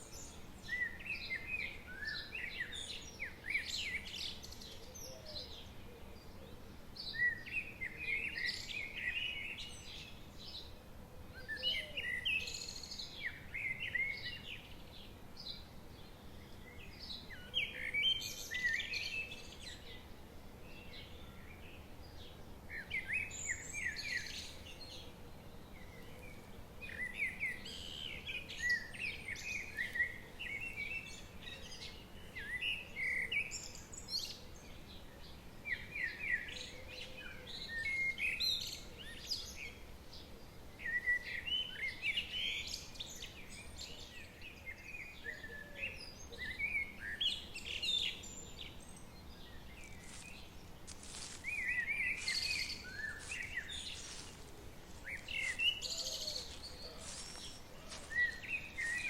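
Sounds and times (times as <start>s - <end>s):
faint background hiss: 0.0s - 59.0s
birds chirping and trilling: 20.8s - 59.0s.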